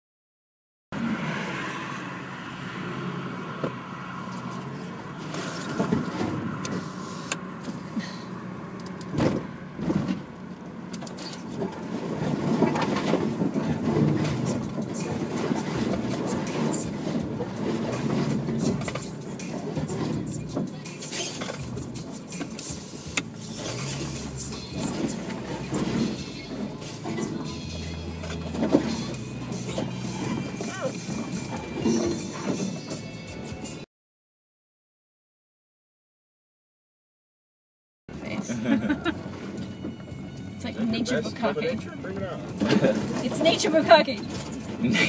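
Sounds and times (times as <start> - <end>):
car engine running: 3.6 - 32.4, 38.1 - 45.0
car body knocking and clattering: 9.1 - 10.3.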